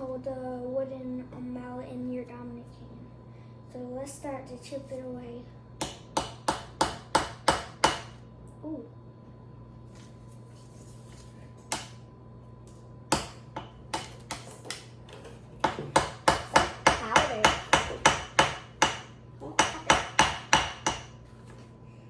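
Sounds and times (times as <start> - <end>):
mallet striking metal chisel: 5.8 - 8.1, 15.6 - 21.1.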